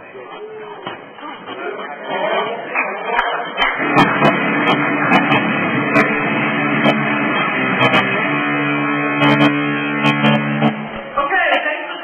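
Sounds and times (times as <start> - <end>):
strummed guitar music: 3.7 - 11.2.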